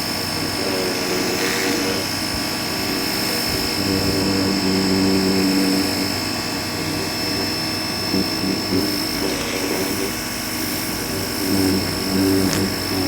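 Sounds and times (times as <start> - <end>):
pressure washer running: 0.0 - 13.0
water jet hissing: 0.0 - 13.0.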